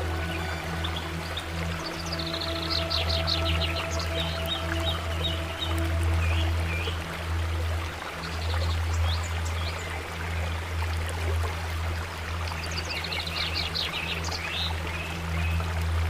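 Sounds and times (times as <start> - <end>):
birds chirping: 0.0 - 7.1
low steady drone: 0.0 - 16.0
water flowing in a stream: 0.0 - 16.0.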